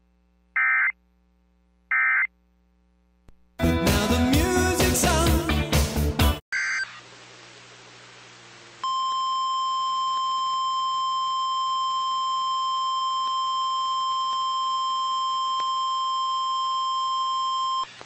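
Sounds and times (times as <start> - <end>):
faint hiss: 6.9 - 9.3.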